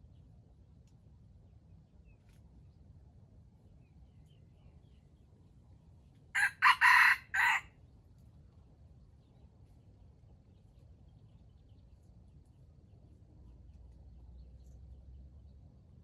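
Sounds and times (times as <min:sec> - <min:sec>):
rooster crowing: 0:06.4 - 0:07.7.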